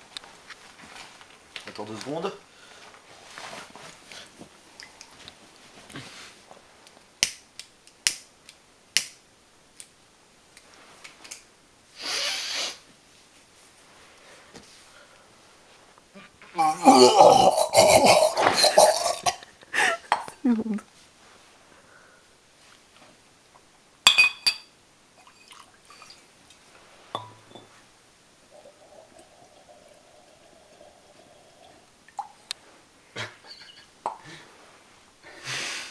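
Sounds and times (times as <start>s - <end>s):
short hiss: 11.9s - 12.9s
glass clinking: 24.0s - 26.2s, 27.1s - 27.8s, 33.5s - 34.2s
faint pouring: 25.2s - 27.8s, 28.5s - 32.4s.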